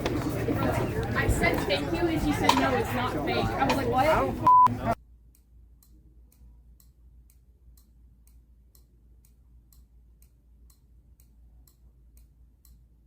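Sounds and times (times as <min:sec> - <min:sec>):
faint regular ticking: 0:04.5 - 0:13.0.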